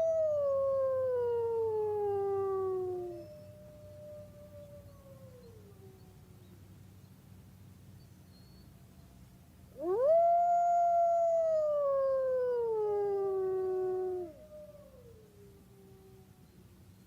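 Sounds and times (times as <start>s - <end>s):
second fainter wolf howl: 0.0s - 6.3s, 9.8s - 16.6s
wolf howling: 9.8s - 16.1s.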